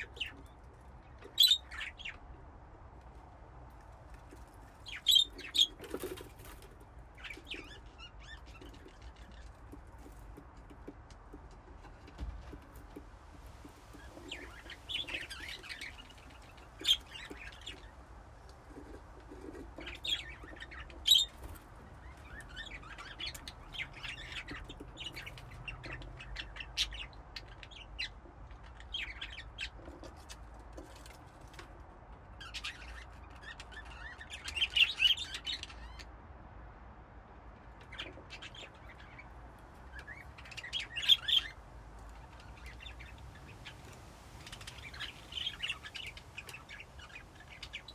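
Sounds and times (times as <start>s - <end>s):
budgerigars chirping and chattering: 0.0s - 2.3s, 4.6s - 10.2s, 13.8s - 18.0s, 18.7s - 30.3s, 32.4s - 36.1s, 37.8s - 47.9s.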